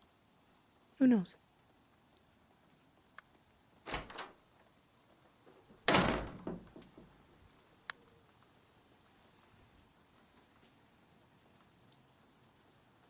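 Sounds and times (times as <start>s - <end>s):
door handle and latch rattling: 3.8s - 4.4s, 5.8s - 7.2s
door shutting hard: 3.8s - 4.4s, 5.8s - 7.1s.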